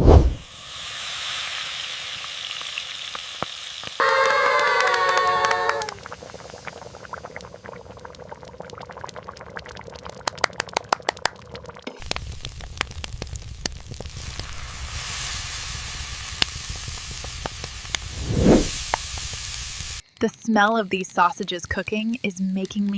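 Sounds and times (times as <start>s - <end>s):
low rumbling noise: 0.0s - 0.4s, 17.8s - 18.7s
sausages sizzling: 0.4s - 10.7s, 11.6s - 20.5s
campfire crackling and popping: 1.7s - 20.3s.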